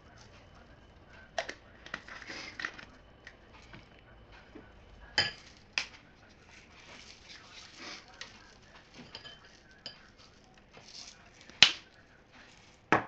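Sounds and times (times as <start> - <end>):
utensils and dishes clicking: 5.1 - 13.0
rustling scrape: 6.2 - 13.0.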